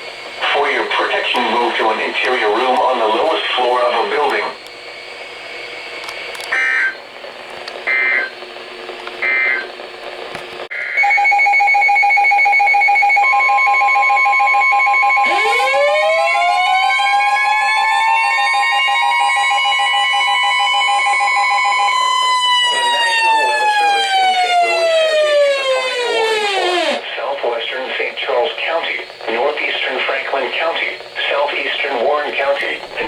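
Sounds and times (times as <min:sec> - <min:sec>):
siren winding up: 0:10.8 - 0:27.0.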